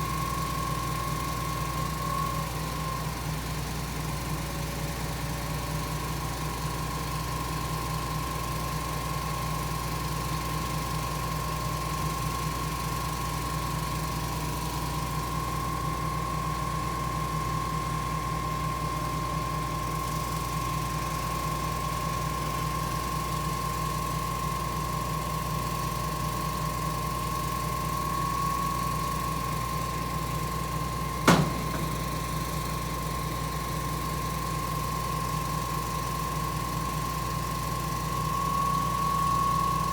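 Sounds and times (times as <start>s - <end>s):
diesel engine rumble: 30.7s - 33.1s
sharp knock: 31.3s - 32.2s.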